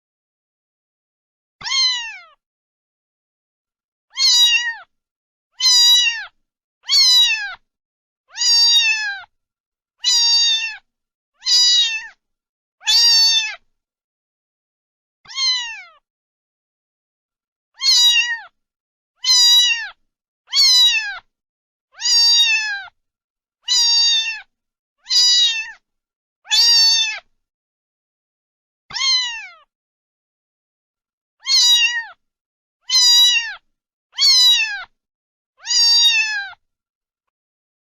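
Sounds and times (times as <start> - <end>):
cat meowing: 1.6 - 2.4, 4.1 - 4.9, 5.6 - 7.6, 8.3 - 9.3, 10.0 - 12.2, 12.8 - 13.6, 15.3 - 16.0, 17.8 - 18.6, 19.2 - 21.3, 22.0 - 23.0, 23.6 - 25.8, 26.5 - 27.3, 28.9 - 29.7, 31.4 - 32.2, 32.8 - 35.0, 35.6 - 36.6.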